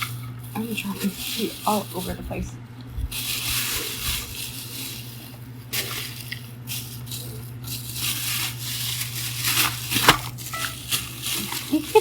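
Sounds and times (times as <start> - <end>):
plastic toy pieces rattling: 3.1 - 12.0.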